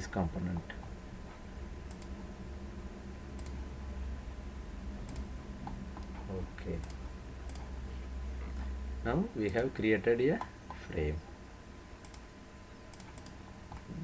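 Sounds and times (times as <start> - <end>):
low electrical hum: 0.0 - 14.0
computer mouse clicking: 1.9 - 2.2, 3.4 - 3.6, 5.0 - 7.7, 12.0 - 12.3, 12.9 - 14.0.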